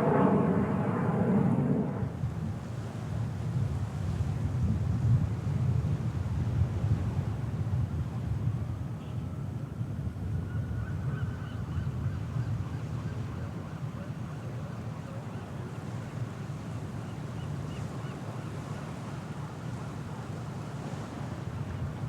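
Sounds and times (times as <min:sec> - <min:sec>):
steady low rumble: 0:00.0 - 0:02.5.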